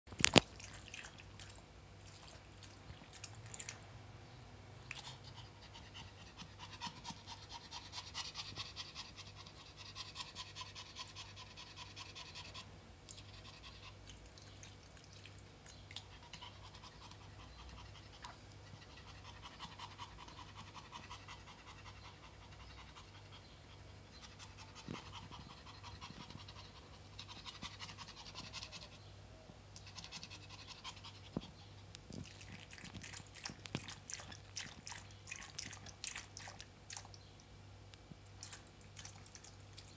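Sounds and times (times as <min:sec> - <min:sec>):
small dog panting fast: 0:05.0 - 0:14.1, 0:16.0 - 0:29.0, 0:29.8 - 0:36.6.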